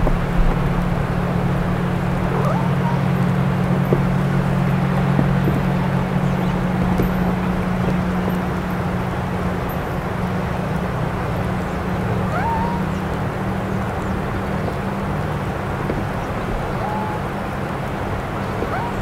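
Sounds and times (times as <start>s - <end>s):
constant low hum: 0.0s - 19.0s.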